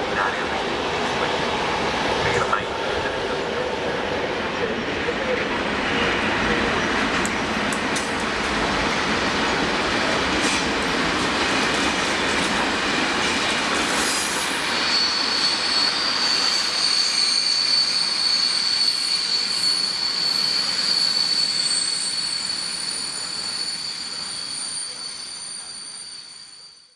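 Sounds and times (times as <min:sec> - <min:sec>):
train rolling: 0:00.0 - 0:26.6
high-pitched wheel squeal: 0:14.1 - 0:26.9.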